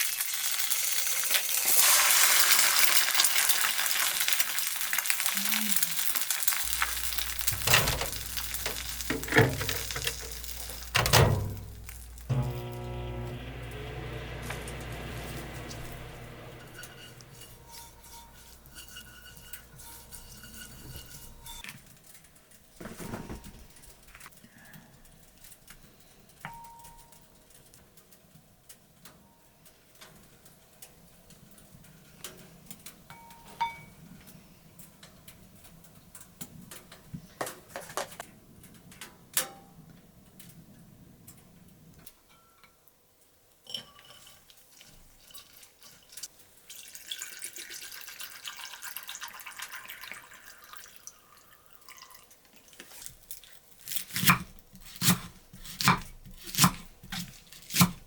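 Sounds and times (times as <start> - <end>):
water running: 6.6 - 21.5, 45.3 - 52.8
kitchen clicks and knocks: 6.7 - 12.2
knife chopping on cutting board: 54.2 - 58.0.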